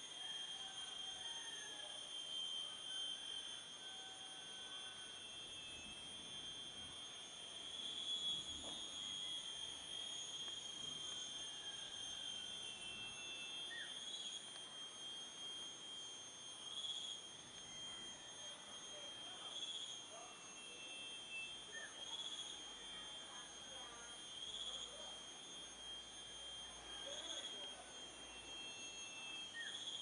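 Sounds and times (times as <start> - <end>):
insects trilling: 0.0 - 30.0
faint bird chirps: 13.2 - 14.4, 21.3 - 22.6.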